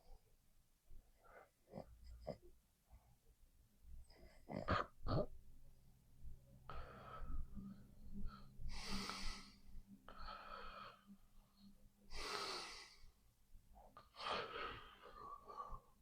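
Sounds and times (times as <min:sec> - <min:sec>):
sleeping person breathing: 0:06.6 - 0:13.2, 0:13.8 - 0:16.0.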